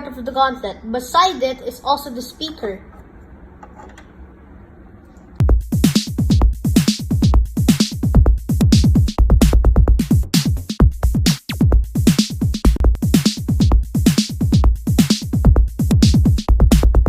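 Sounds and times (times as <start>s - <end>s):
bright hi-hat hits: 5.4s - 9.2s, 10.0s - 16.9s
deep kick drums: 5.4s - 17.0s.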